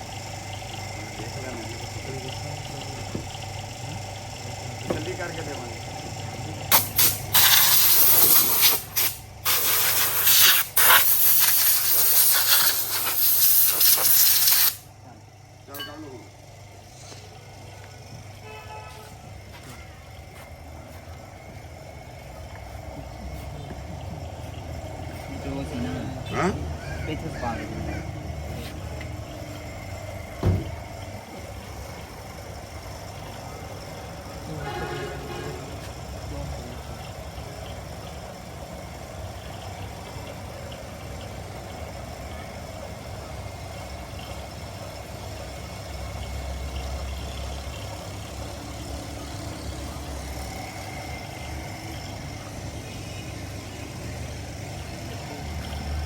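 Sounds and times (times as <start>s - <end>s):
car engine idling: 0.0s - 7.4s, 19.3s - 56.0s
loud hiss in bursts: 6.7s - 14.9s.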